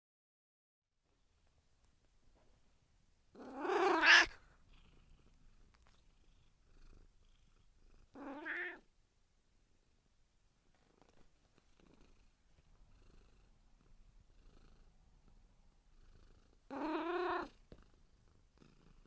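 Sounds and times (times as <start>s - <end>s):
cat meowing: 3.4s - 4.4s, 8.2s - 8.8s, 16.7s - 17.5s.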